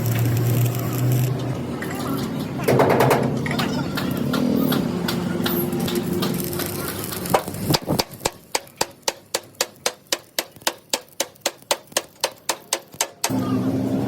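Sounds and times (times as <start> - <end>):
hammer striking steel: 2.6 - 13.5.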